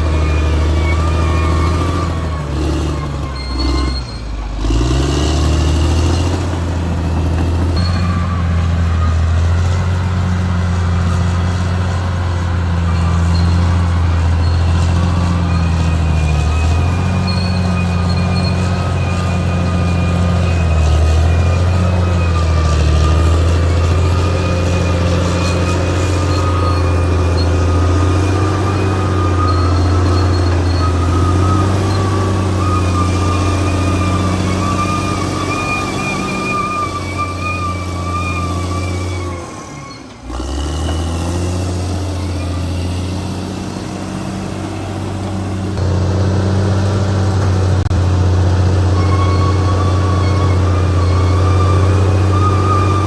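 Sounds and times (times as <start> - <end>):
bulldozer diesel engine droning: 0.0 - 53.0.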